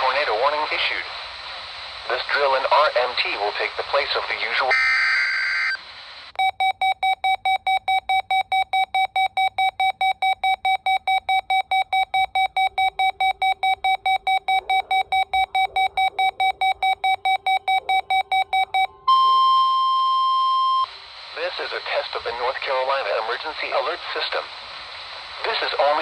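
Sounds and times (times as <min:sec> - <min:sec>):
electronic alarm beeping: 0:06.4 - 0:20.9
data burst: 0:11.4 - 0:21.5.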